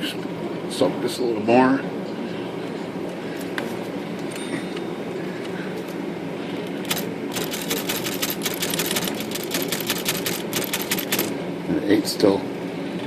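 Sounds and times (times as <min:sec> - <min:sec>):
steady background hum: 0:00.0 - 0:13.0
typewriter keys clacking: 0:06.9 - 0:11.3.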